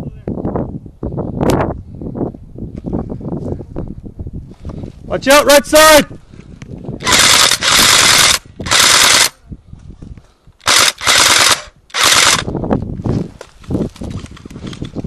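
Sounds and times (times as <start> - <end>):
airsoft gun firing bursts: 7.0 - 9.4, 10.6 - 12.5.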